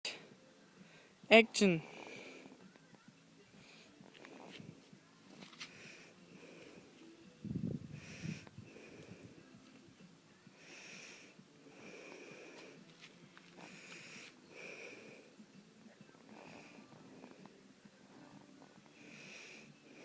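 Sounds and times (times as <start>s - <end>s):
wheezy breathing or sniffing: 1.8s - 2.7s, 3.5s - 9.6s, 10.5s - 15.6s, 16.2s - 20.0s.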